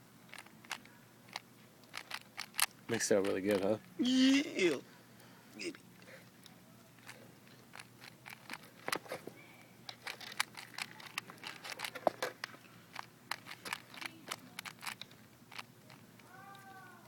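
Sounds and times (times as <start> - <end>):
puzzle cube clicking: 0.3 - 3.7, 7.0 - 9.0, 9.9 - 16.0.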